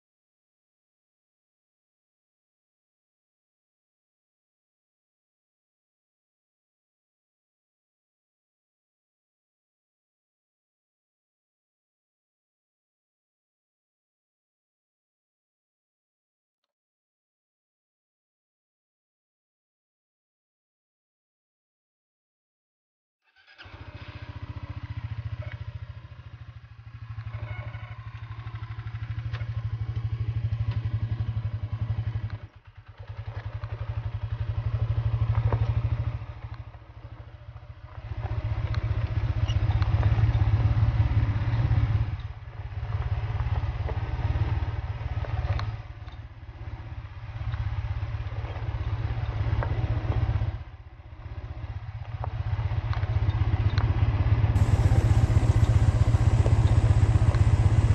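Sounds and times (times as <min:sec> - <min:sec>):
vehicle engine running: 0:23.7 - 0:57.9.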